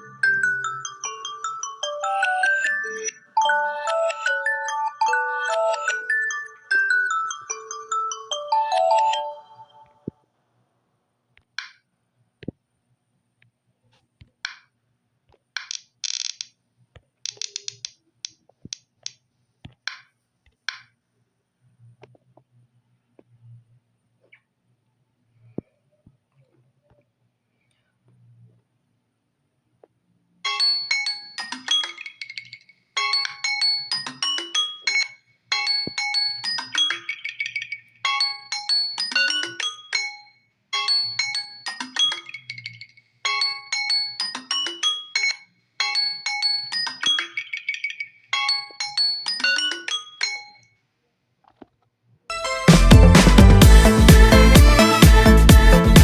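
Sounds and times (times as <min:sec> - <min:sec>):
tablet alarm melody: 0:00.0 - 0:10.0, 0:52.3 - 0:56.0.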